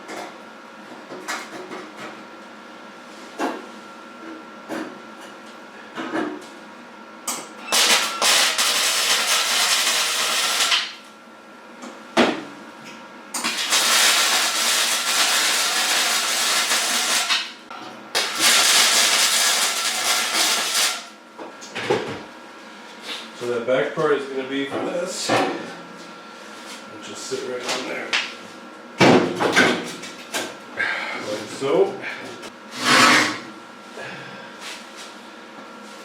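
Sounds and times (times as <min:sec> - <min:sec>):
power tool running: 0:13.4 - 0:17.5.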